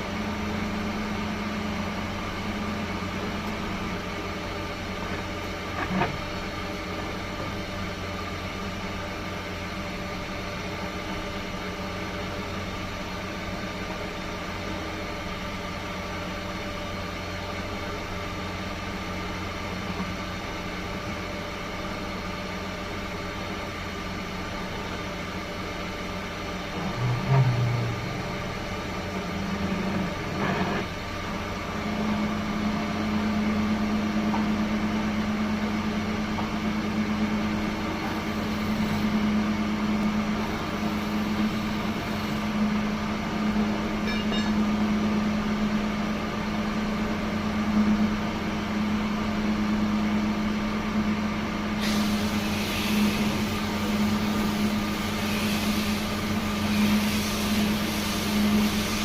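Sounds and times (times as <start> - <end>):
hiss: 51.8 - 59.0.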